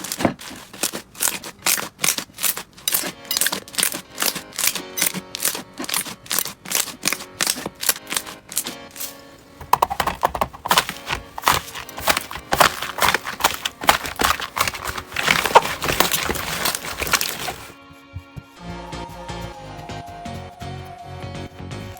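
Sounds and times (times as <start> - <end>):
soft background music: 2.9 - 21.9.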